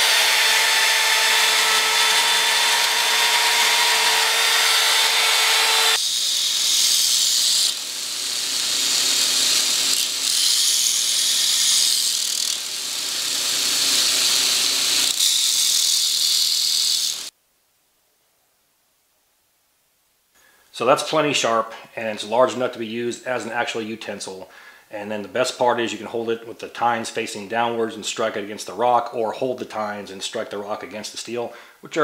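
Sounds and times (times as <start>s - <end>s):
power grinder whining: 0.0s - 17.3s.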